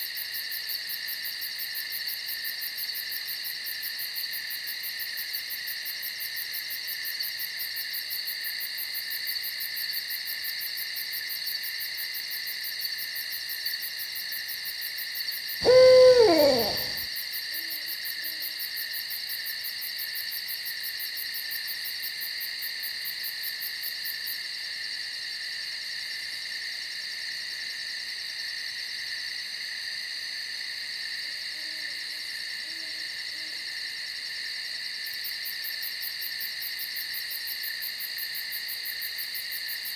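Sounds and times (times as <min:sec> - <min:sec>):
night insects chorus: 0:15.6 - 0:17.0
owl hooting: 0:15.6 - 0:17.1.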